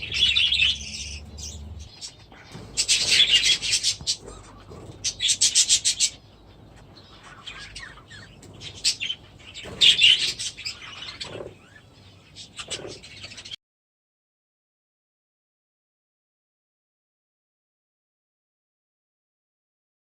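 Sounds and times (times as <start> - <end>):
budgerigars chirping: 0.0 - 13.6.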